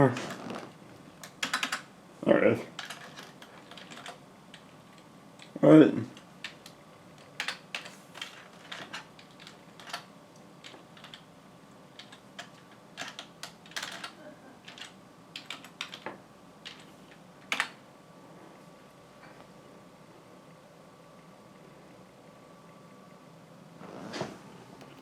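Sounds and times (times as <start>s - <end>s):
faint steady hum: 0.0s - 25.0s
computer keyboard typing: 1.2s - 1.9s, 2.8s - 11.3s, 11.9s - 17.8s.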